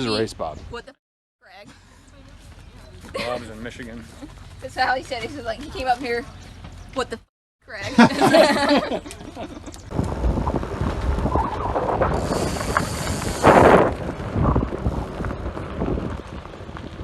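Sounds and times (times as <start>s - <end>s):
wind buffeting microphone: 9.8s - 17.0s.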